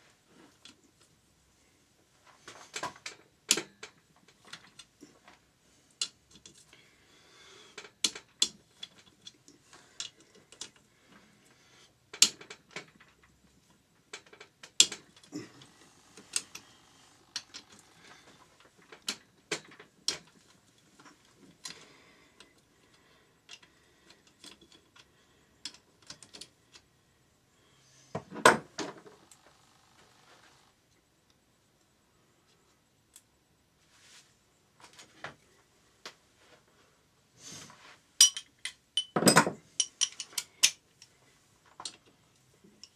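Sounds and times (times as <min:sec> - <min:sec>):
metal tools clinking and clanking: 0:38.2 - 0:40.8.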